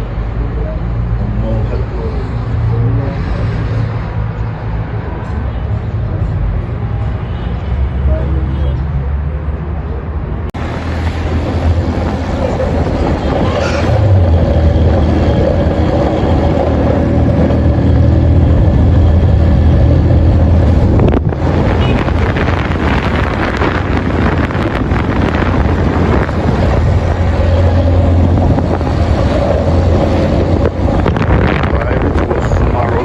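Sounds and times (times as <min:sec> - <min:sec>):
road noise: 0:00.0 - 0:33.0
vehicle engine hum: 0:00.0 - 0:33.0
wind buffeting microphone: 0:10.6 - 0:33.0.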